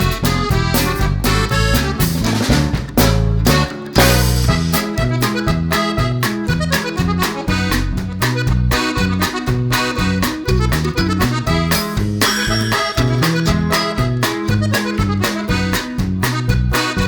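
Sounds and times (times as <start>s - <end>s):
accordion-like melody: 0.0s - 17.0s
upbeat background music: 10.6s - 15.8s.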